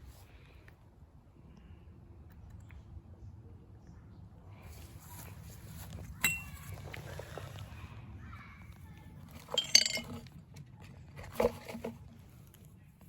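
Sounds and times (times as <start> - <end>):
loose metal pieces clinking: 6.2 - 6.6, 9.4 - 10.3.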